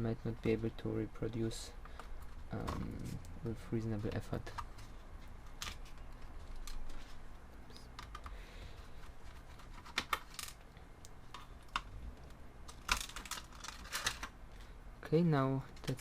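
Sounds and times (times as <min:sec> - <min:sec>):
plastic laptop parts clicking: 0:05.4 - 0:07.0, 0:07.9 - 0:08.4, 0:09.0 - 0:10.7, 0:12.7 - 0:14.4.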